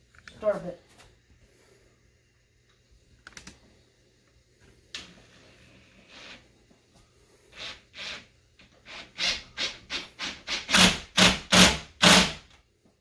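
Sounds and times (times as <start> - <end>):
screw grating into hardwood: 5.8 - 6.4, 7.5 - 12.4.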